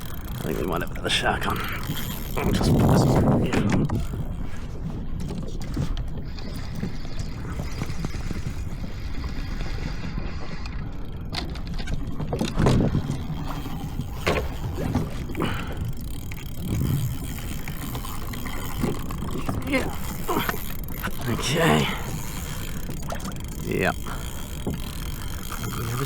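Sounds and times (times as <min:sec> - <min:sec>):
water washing against kayak hull: 0:00.0 - 0:26.0
wind rumble on microphone: 0:01.5 - 0:20.7.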